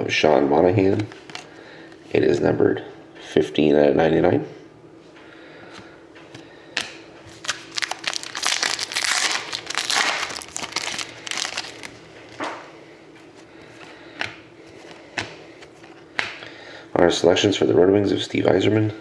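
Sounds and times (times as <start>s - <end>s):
cards clicking and rustling: 6.3s - 12.6s
wrapper crinkling: 7.3s - 12.5s.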